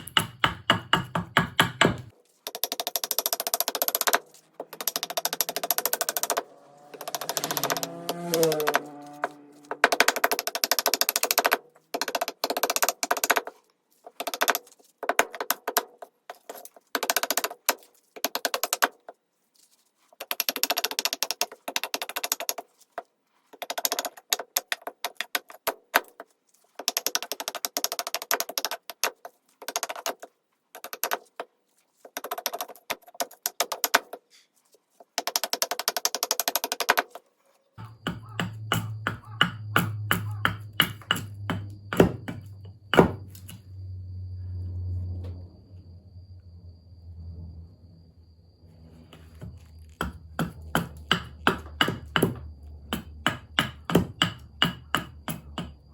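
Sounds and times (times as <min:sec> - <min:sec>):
knife scraping wood: 0:02.1 - 0:19.1.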